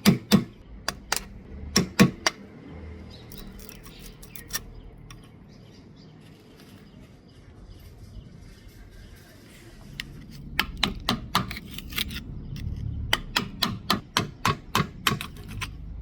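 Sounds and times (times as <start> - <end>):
small clicks and scraping: 3.3 - 5.4, 8.6 - 13.3, 15.0 - 15.8.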